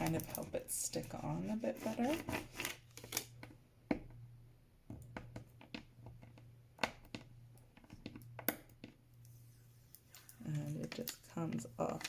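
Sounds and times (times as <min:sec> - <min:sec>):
light clicks and crackles: 0:09.9 - 0:12.0.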